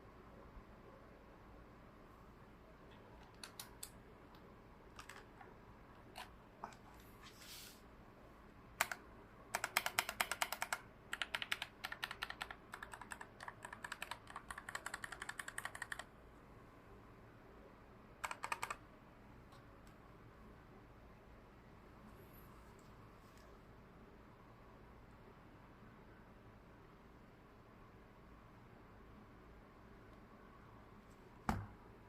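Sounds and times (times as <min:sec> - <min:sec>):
mechanical keyboard typing: 0:03.2 - 0:03.9, 0:04.9 - 0:05.4, 0:08.8 - 0:16.1, 0:18.2 - 0:18.8.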